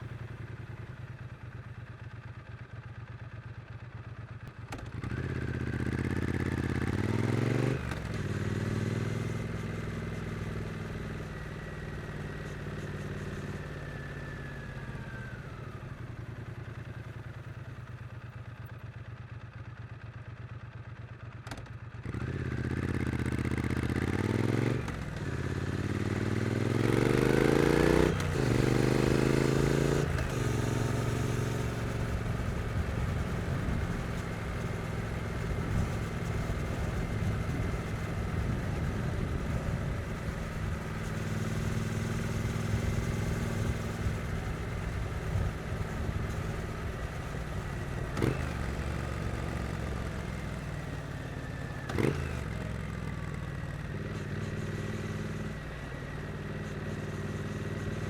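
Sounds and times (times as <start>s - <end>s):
motorcycle engine accelerating: 4.4s - 18.5s, 21.4s - 58.0s.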